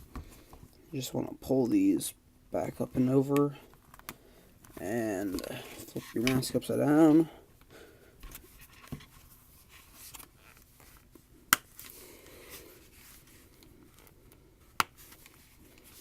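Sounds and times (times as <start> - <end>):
plastic rubbing and scraping: 4.6 - 7.3.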